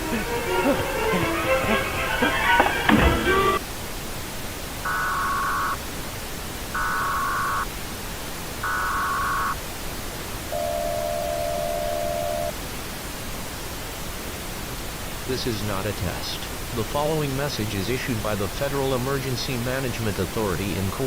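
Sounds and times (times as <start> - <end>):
constant hiss: 0.0 - 21.0
screeching data tones: 4.8 - 5.8, 6.7 - 7.7, 8.6 - 9.6, 10.5 - 12.5
steady low alert tone: 6.7 - 7.7, 8.6 - 9.6, 10.5 - 12.5.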